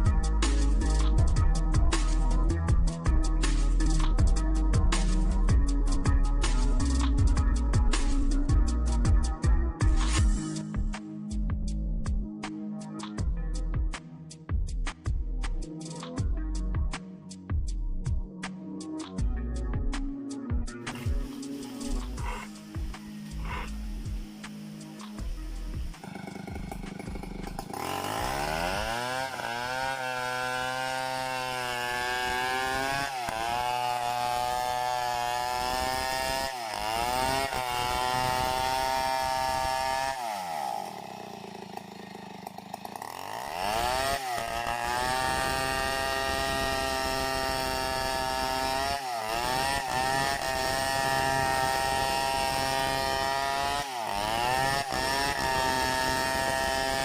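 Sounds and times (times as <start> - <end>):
chainsaw cutting wood: 0.0 - 9.2, 9.8 - 11.0, 20.8 - 57.0.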